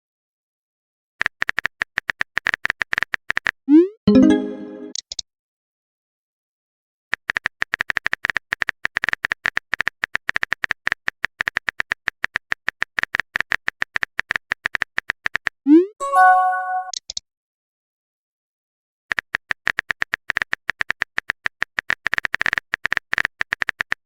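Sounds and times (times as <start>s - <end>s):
message alert chime: 4.1s - 5.0s, 16.0s - 17.0s.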